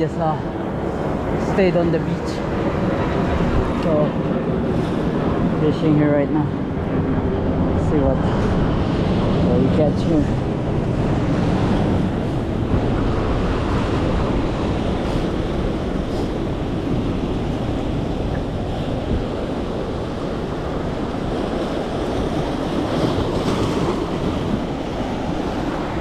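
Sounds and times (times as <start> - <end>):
ocean surf against rocks: 0.0 - 26.0
wind rumbling on microphone: 0.0 - 26.0.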